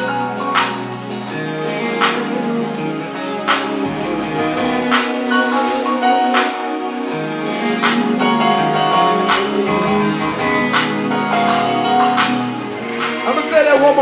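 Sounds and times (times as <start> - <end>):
live band playing: 0.0 - 14.0
drum kit strikes: 7.8 - 14.0.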